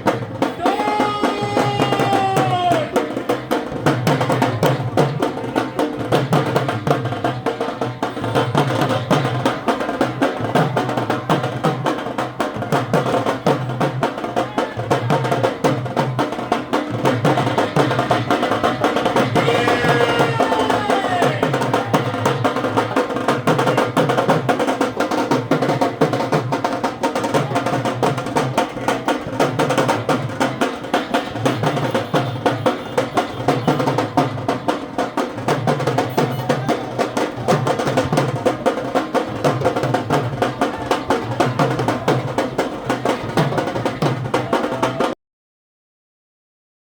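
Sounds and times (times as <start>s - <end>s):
drums beating fast rhythm: 0.0s - 45.2s
procession band playing: 0.4s - 3.4s, 19.3s - 22.2s.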